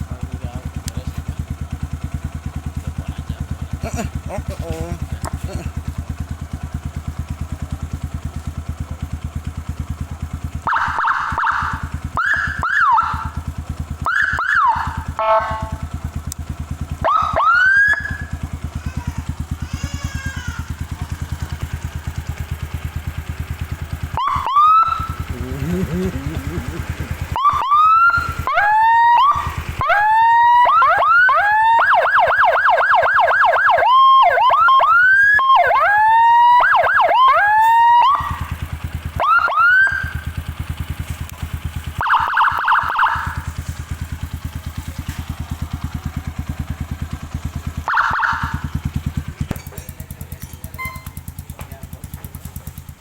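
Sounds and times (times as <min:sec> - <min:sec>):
motorcycle idling: 0:00.0 - 0:53.0
electronic siren whoops: 0:10.6 - 0:13.4, 0:14.0 - 0:15.9, 0:17.0 - 0:18.4, 0:24.1 - 0:38.6, 0:39.2 - 0:40.3, 0:42.0 - 0:43.5, 0:47.8 - 0:48.8
siren warble: 0:10.7 - 0:13.4, 0:14.0 - 0:15.9, 0:17.0 - 0:18.4, 0:24.1 - 0:38.6, 0:39.2 - 0:40.3, 0:42.0 - 0:43.5, 0:47.8 - 0:48.8.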